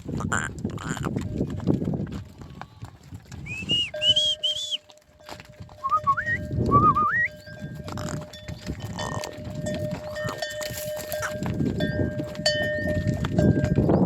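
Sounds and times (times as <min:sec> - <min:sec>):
cowbells clanking: 0:00.2 - 0:14.0.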